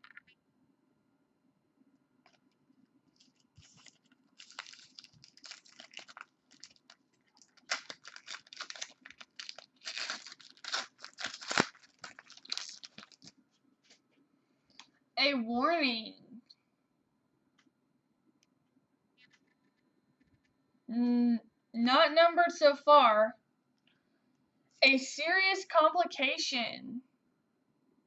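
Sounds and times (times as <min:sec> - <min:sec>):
wrapper tearing and crinkling: 0:03.2 - 0:13.3.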